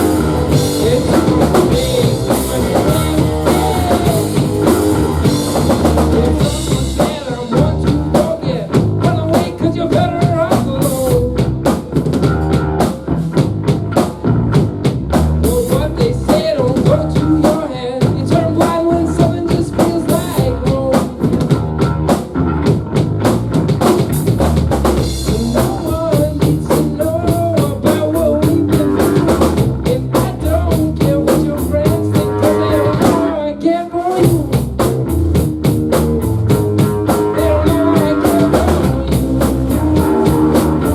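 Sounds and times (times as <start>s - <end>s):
person singing: 0.0s - 11.4s, 15.4s - 21.2s, 25.2s - 34.7s, 37.0s - 40.9s
bass guitar: 0.0s - 40.9s
drum kit with rimshots: 0.0s - 40.9s
electric guitar: 0.0s - 40.9s.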